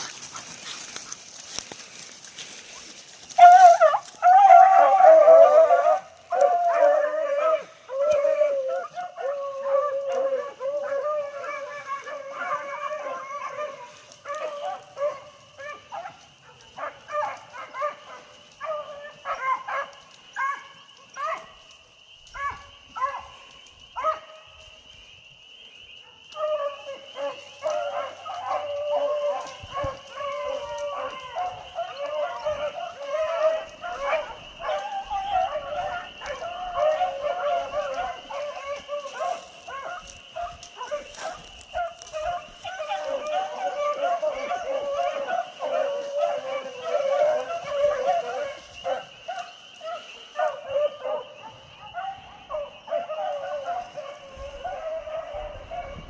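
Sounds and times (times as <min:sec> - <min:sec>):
hounds baying: 0:00.0 - 0:56.0.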